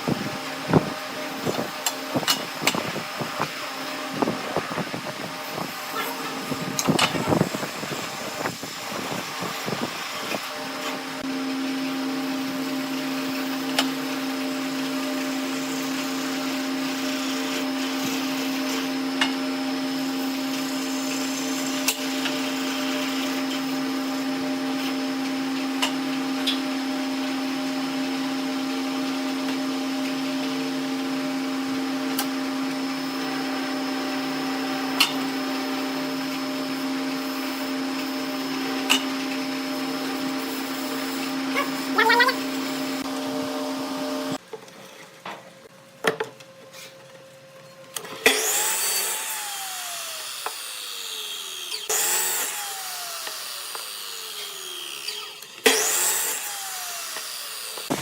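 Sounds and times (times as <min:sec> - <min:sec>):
electric motor humming: 0:00.0 - 0:11.4, 0:32.6 - 0:44.4, 0:48.0 - 0:58.0.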